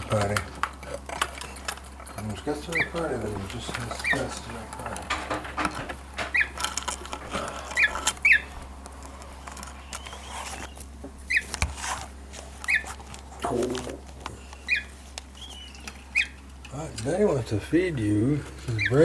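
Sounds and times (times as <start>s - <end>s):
bird giving high chirps: 2.6s - 4.8s, 5.7s - 6.6s, 7.3s - 11.5s, 12.6s - 13.0s, 14.5s - 16.5s, 18.8s - 19.0s.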